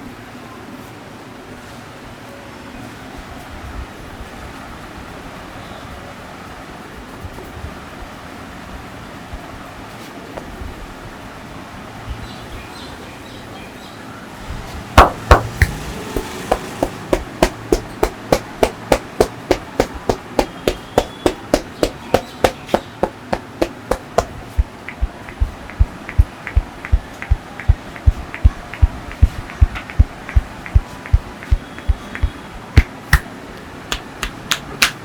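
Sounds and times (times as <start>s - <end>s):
dull deep thuds: 15.0s - 33.2s
hands slapping body: 15.0s - 33.3s, 33.9s - 35.0s.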